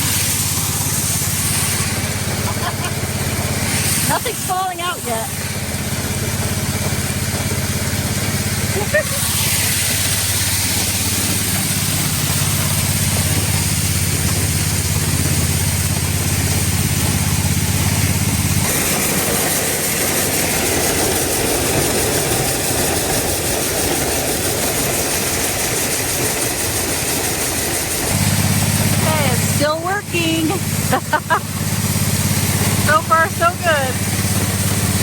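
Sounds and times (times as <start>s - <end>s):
corn rushing: 0.0s - 35.0s
machinery low hum: 0.0s - 35.0s.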